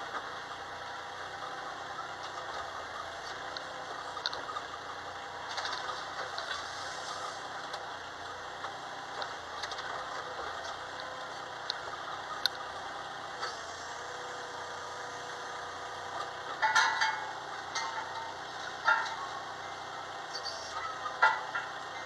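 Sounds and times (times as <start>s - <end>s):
excavator running: 0.0s - 22.0s.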